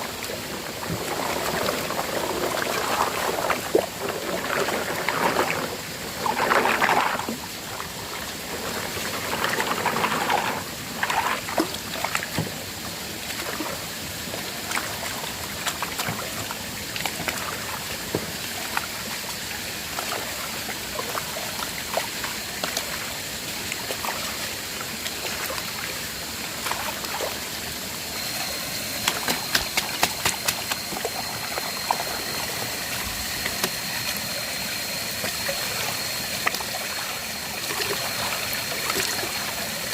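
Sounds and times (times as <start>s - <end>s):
water running over rocks: 0.0s - 39.9s
thin high tone: 26.8s - 39.9s.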